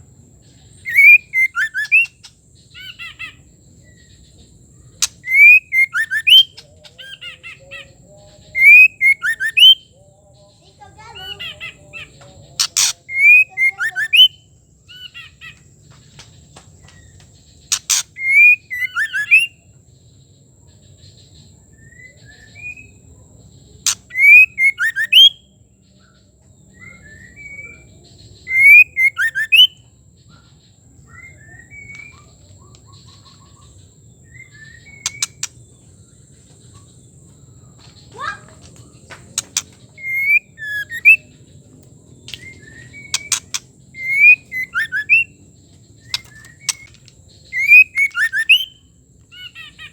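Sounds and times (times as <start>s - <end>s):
bird calling with whistled notes: 0.7s - 4.3s, 5.0s - 7.9s, 8.5s - 9.9s, 12.0s - 15.6s, 16.8s - 19.7s, 23.9s - 25.5s, 26.7s - 29.8s, 31.0s - 35.6s, 39.4s - 41.5s, 42.2s - 49.9s
sharp bird click: 5.0s - 6.4s, 12.6s - 14.0s, 17.7s - 19.5s, 23.9s - 25.0s, 35.0s - 35.6s, 38.6s - 41.2s, 42.2s - 45.2s, 46.0s - 48.7s.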